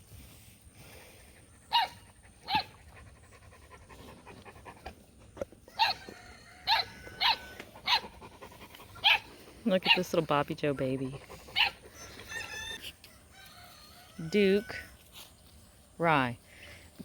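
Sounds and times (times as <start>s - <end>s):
puppy barking in high yips: 1.7s - 2.7s, 6.7s - 8.1s, 9.0s - 9.2s.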